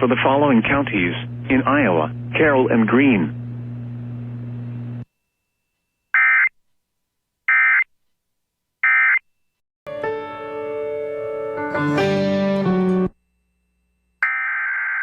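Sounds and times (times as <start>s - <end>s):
low steady hum: 0.0s - 6.1s, 13.1s - 14.2s
music with guitar: 9.9s - 13.2s.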